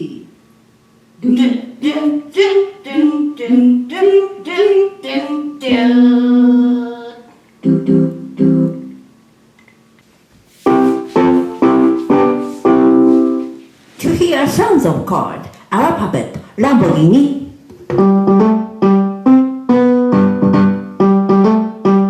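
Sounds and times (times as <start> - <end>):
keyboard chords: 5.7 - 9.1, 10.7 - 13.6, 17.9 - 22.0.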